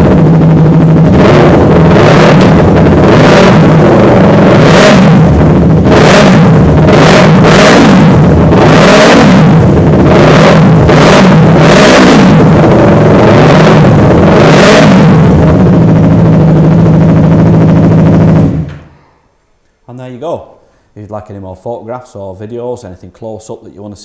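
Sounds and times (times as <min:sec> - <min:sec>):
motorcycle engine revving: 0:00.0 - 0:19.0.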